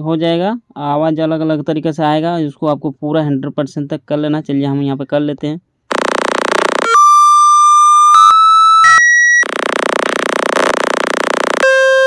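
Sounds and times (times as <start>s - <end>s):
phone speaker buzzing: 5.9s - 12.0s
beeps stepping up in pitch: 6.8s - 9.5s, 10.2s - 12.0s.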